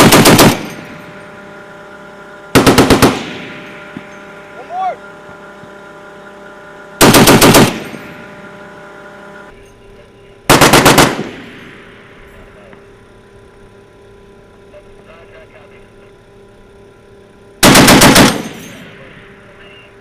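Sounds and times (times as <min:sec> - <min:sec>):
machine gun bursts: 0:00.0 - 0:00.8, 0:02.6 - 0:03.4, 0:07.0 - 0:08.0, 0:10.5 - 0:11.4, 0:17.6 - 0:18.8.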